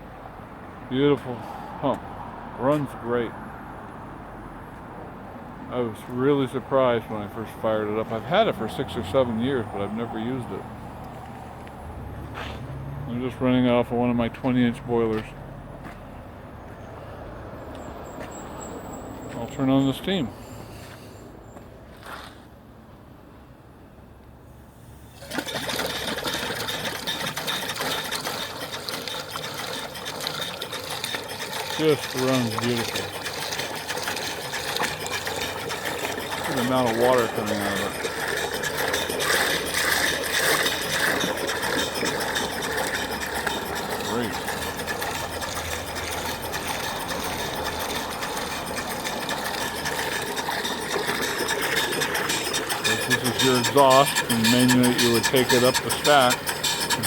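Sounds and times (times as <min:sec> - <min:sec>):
steam pump clattering: 0:25.1 - 0:57.0.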